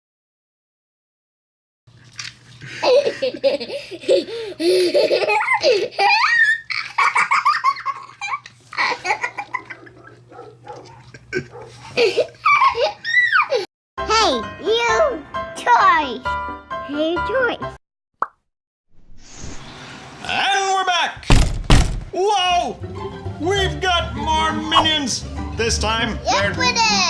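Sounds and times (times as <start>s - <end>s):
young child laughing and squealing: 4.7s - 9.7s, 12.0s - 13.7s.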